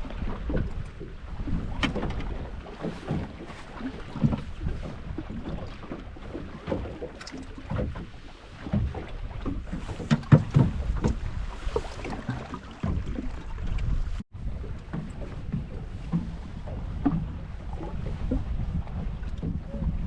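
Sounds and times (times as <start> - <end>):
water slapping boat hull: 0.0 - 20.0
knocks against boat hull: 8.7 - 12.2.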